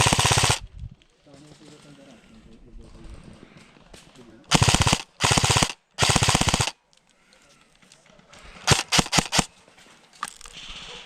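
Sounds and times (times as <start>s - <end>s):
airsoft gun full-auto bursts: 0.0s - 0.6s, 4.5s - 6.8s, 8.6s - 9.5s.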